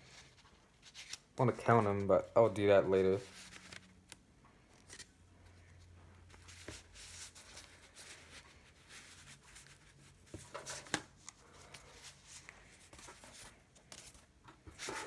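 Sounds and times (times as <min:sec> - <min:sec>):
floppy disks sliding and rustling: 0:06.3 - 0:15.0.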